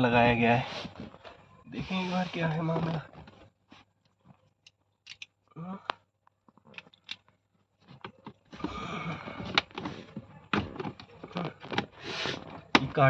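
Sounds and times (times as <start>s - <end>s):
plastic scraping and rubbing: 0.6s - 4.0s, 7.8s - 13.0s.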